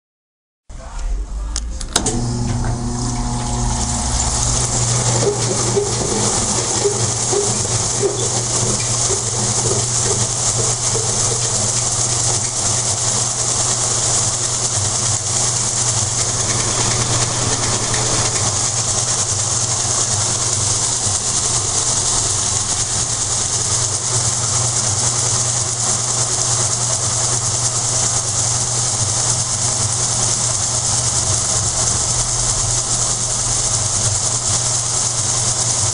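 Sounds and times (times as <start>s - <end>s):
washing machine spinning: 1.6s - 35.9s
washing machine creaking: 1.8s - 13.4s, 15.2s - 19.4s.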